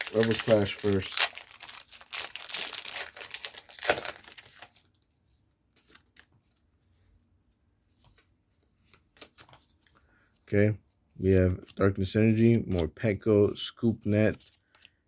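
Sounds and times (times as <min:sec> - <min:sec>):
foil wrapper tearing and crinkling: 0:00.0 - 0:05.0.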